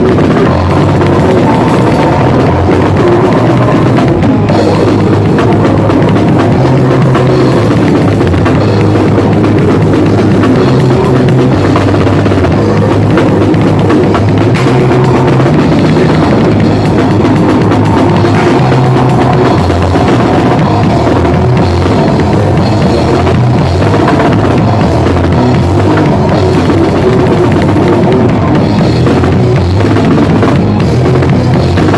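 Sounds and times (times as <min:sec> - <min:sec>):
drum kit pounding: 0:00.0 - 0:31.9
heavy guitar and bass: 0:00.0 - 0:31.9.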